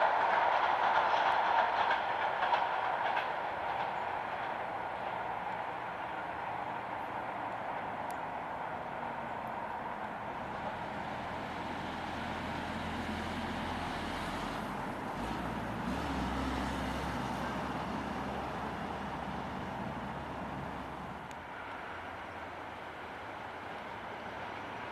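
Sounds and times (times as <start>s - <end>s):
low vehicle rumble: 10.3s - 21.4s.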